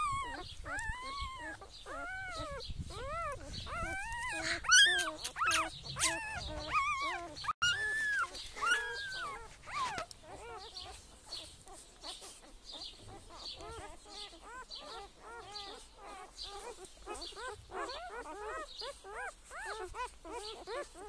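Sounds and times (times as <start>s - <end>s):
small animals crying: 0.0s - 11.0s.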